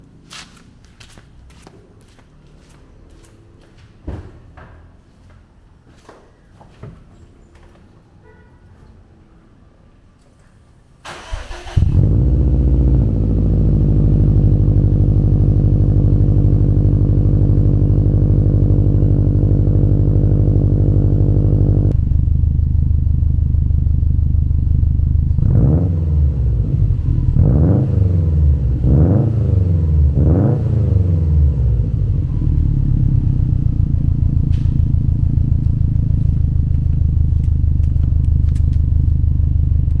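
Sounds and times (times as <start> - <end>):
engine revving: 11.2 - 22.0, 25.3 - 33.4
car engine idling: 12.4 - 25.4, 31.6 - 40.0.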